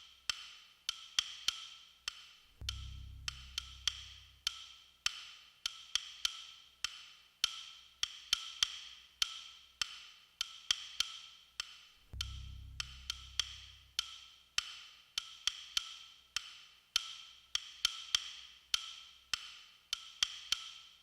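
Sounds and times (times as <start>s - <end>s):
wood block beat: 0.0s - 20.8s
deep bass note: 2.6s - 4.3s, 12.2s - 13.8s.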